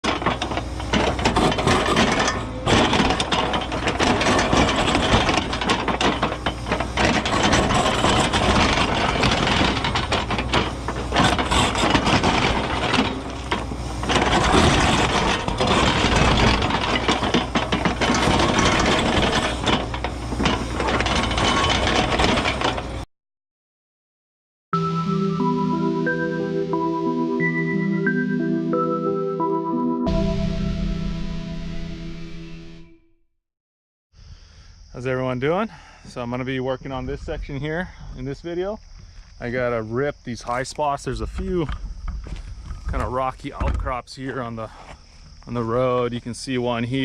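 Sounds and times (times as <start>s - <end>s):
ripper grinding rock: 0.0s - 23.0s, 36.0s - 47.0s
excavator diesel engine: 0.0s - 23.1s.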